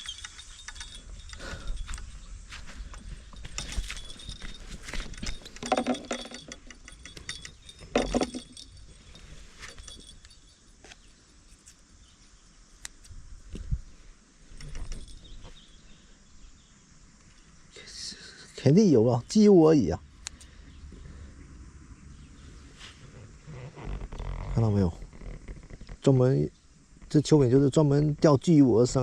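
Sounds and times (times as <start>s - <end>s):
objects clattering and clinking: 0.0s - 10.5s.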